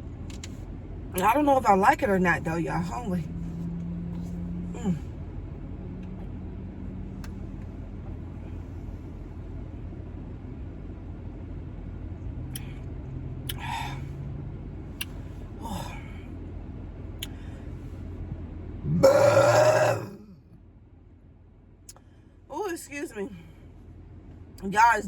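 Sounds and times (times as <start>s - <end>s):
car interior hum: 0.0s - 25.0s
loud belch: 18.9s - 20.2s.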